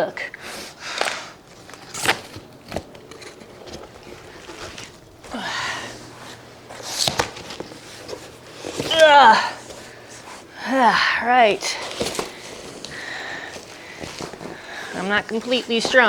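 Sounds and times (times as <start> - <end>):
breathy sigh: 5.2 - 6.1.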